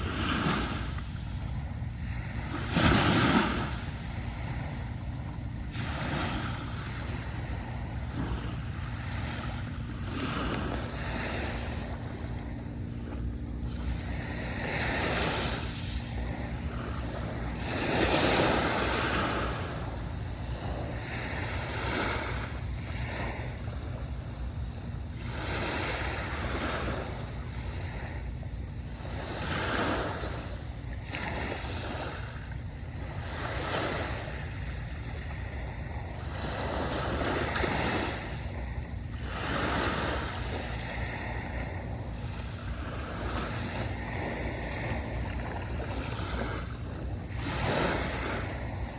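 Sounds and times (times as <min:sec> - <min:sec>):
steady low rumble: 0:00.0 - 0:48.9
waves breaking on beach: 0:00.0 - 0:48.9.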